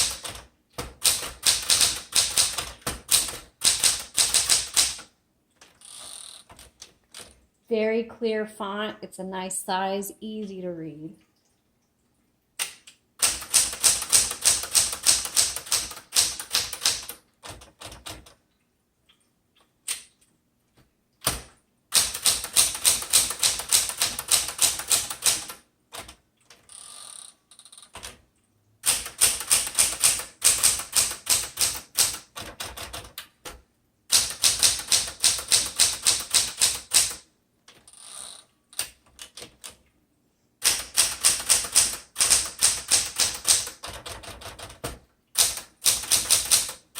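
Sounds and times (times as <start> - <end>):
manual typewriter typing: 0.0 - 7.4, 12.6 - 18.4, 21.2 - 28.2, 28.8 - 39.8, 40.6 - 46.9.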